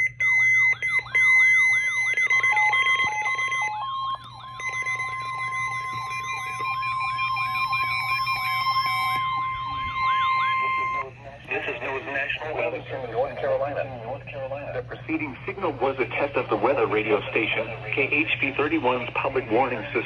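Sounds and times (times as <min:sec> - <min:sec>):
warbling siren: 0:00.0 - 0:14.2
choppy beeping: 0:00.0 - 0:20.0
steady high alarm tones: 0:00.0 - 0:20.0.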